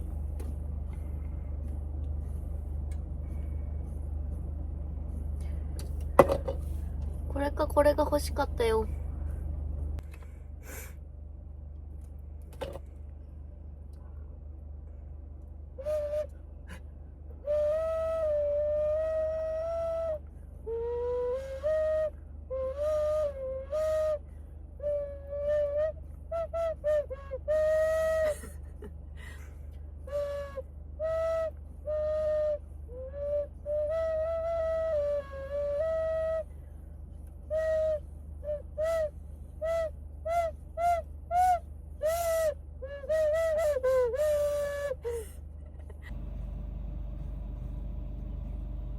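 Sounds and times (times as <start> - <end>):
steady low hum: 0.0 - 48.9
flute-like melody: 15.8 - 16.4, 17.4 - 28.3, 30.0 - 36.6, 37.4 - 45.0.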